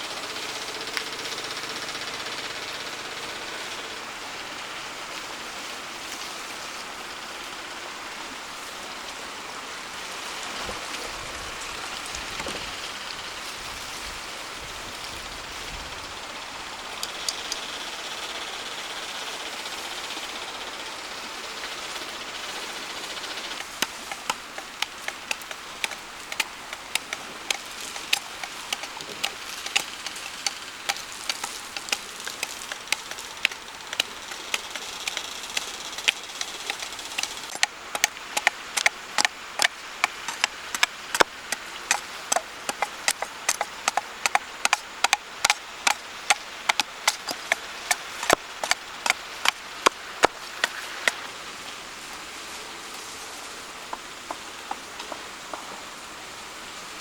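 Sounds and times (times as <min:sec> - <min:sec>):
steady outdoor hiss: 0:00.0 - 0:57.0
hand tool striking wood: 0:23.4 - 0:51.2.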